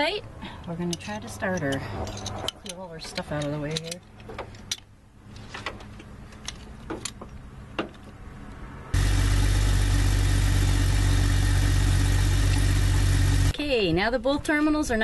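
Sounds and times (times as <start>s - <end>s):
car engine idling: 9.0s - 13.5s.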